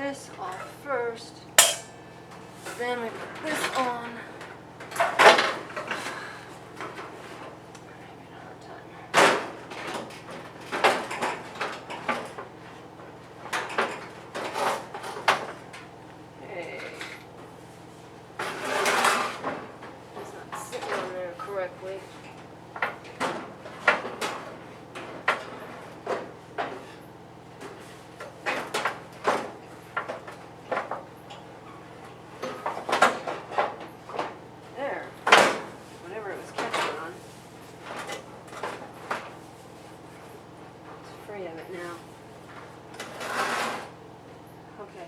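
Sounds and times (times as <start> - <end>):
metal housing clanking and scraping: 1.6 - 2.0
metal knocks and rattles: 1.6 - 2.0.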